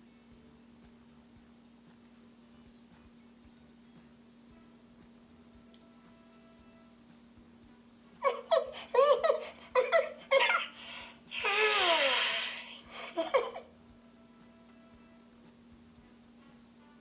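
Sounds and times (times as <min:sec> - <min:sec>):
high-pitched giggling: 0:08.2 - 0:13.7.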